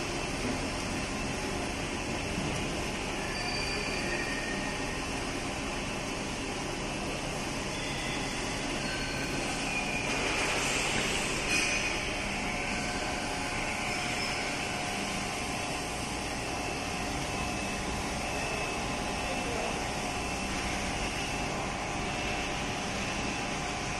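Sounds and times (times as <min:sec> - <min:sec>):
grinding machine whirring: 0:06.4 - 0:23.9.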